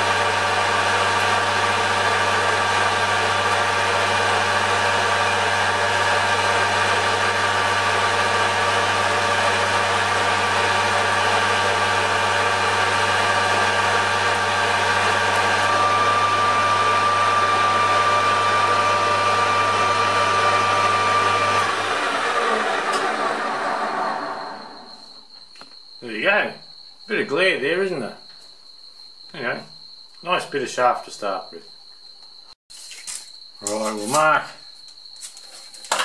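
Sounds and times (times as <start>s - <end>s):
lathe motor humming: 0.0s - 25.0s
steady whine: 11.0s - 25.2s.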